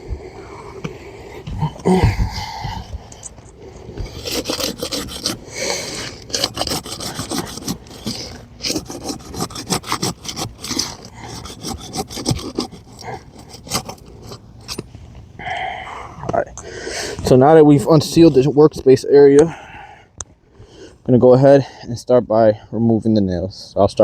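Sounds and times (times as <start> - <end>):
tool rasping under roof shingle: 0.0 - 15.7, 16.6 - 21.0.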